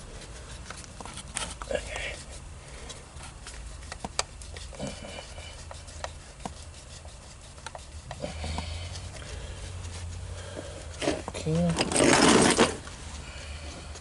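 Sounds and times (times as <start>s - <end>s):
steady low hum: 0.0s - 14.0s
hand tools clicking and tapping: 2.8s - 9.3s.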